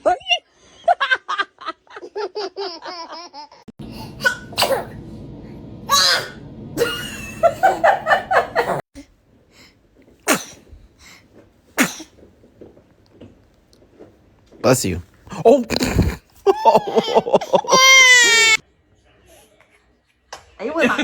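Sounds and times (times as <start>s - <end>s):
babies sneezing: 4.2s - 5.0s, 10.3s - 10.7s, 11.8s - 12.2s.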